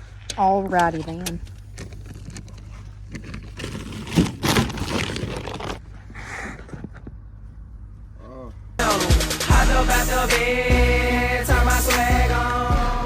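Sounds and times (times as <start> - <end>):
rustling and scraping handling noise: 0.0 - 7.6
low steady hum: 0.0 - 8.8.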